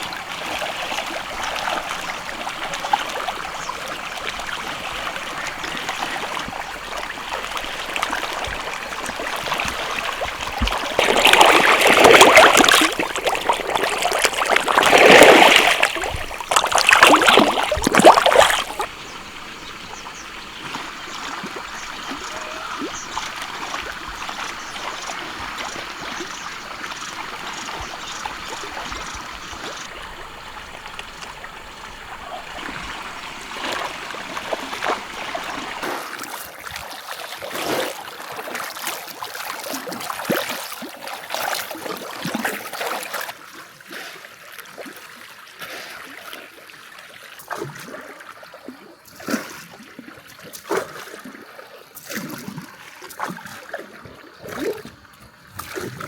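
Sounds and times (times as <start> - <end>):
trickle of running water: 0.0 - 35.8
water splashing loudly: 0.0 - 43.3.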